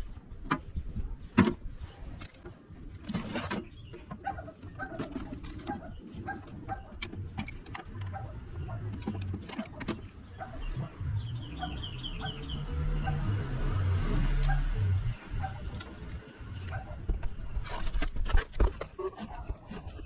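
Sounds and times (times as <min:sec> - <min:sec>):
high bird chirps: 0:10.3 - 0:13.3.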